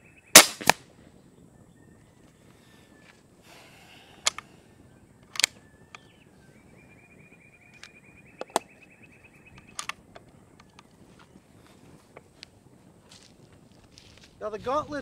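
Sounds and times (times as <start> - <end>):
air rifle firing: 0.4 - 0.8.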